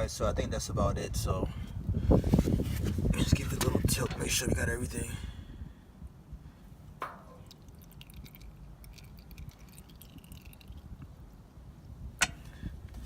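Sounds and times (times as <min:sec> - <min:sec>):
oil dripping into a pan: 0:07.0 - 0:11.2.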